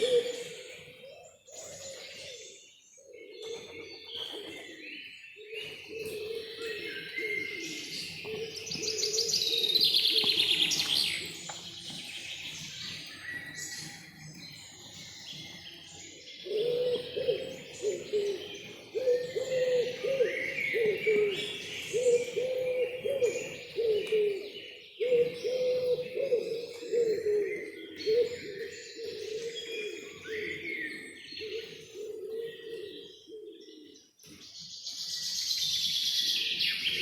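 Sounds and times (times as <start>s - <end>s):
bird cooing: 0.0s - 11.4s, 16.4s - 34.1s
birds chirping: 0.0s - 37.0s.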